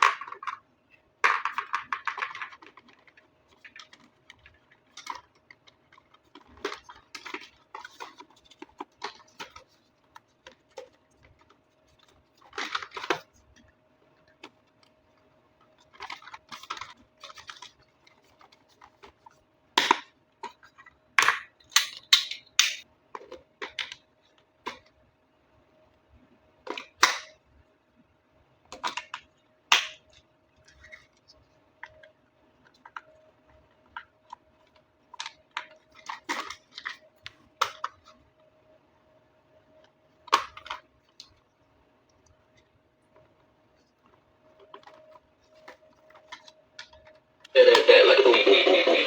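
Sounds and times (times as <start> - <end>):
plastic toys clicking and rustling: 0.0 - 25.0, 28.7 - 38.3, 42.6 - 49.0
faint steady hum: 22.9 - 49.0.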